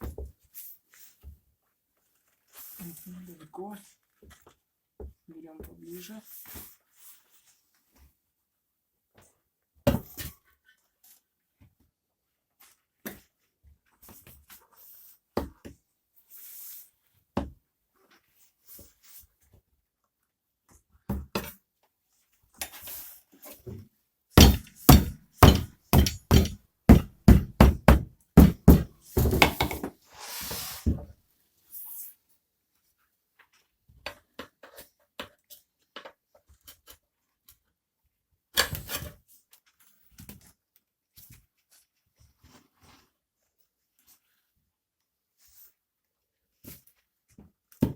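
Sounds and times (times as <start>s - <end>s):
hammer knocking on tyre lever: 24.4s - 29.8s.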